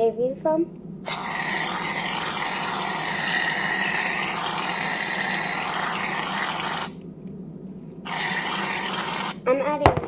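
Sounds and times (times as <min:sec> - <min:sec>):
aerosol can spraying hiss: 0:08.1 - 0:09.4.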